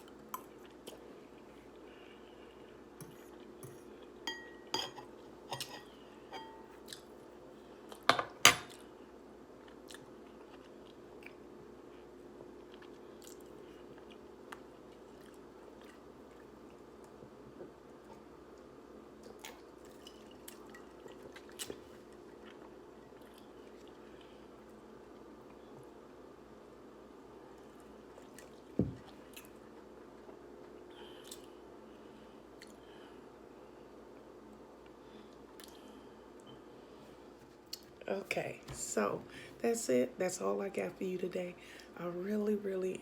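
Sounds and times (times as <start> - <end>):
low steady hum: 0.0 - 43.0
chewing and mouth sounds: 9.6 - 11.5, 12.6 - 18.3, 19.2 - 24.3, 35.3 - 35.9.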